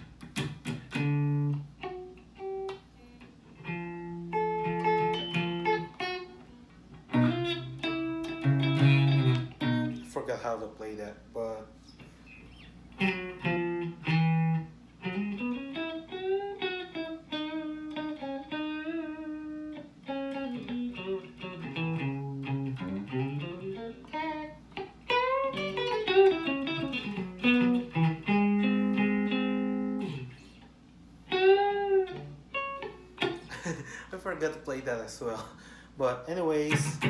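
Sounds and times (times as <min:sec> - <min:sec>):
electric guitar melody with bends: 0:00.0 - 0:10.1, 0:12.0 - 0:33.9, 0:36.7 - 0:37.0.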